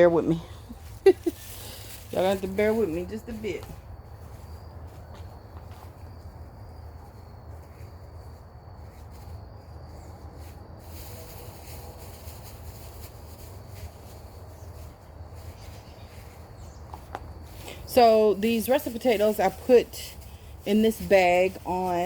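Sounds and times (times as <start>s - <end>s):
rustling: 0.5s - 22.0s
high insect drone: 1.6s - 15.5s.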